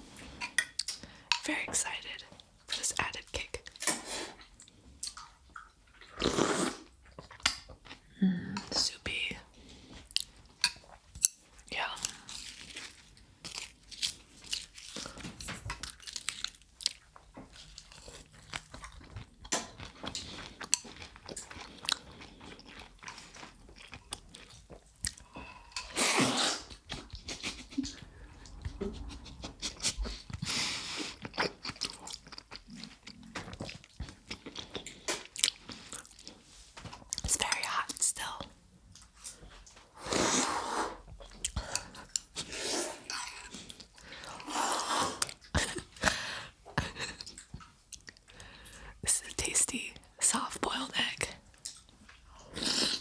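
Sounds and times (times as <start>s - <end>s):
wet chewing with mouth clicks: 0.1s - 53.0s
slurping noodles: 6.0s - 7.0s, 25.1s - 32.2s, 40.0s - 46.4s, 52.4s - 53.0s.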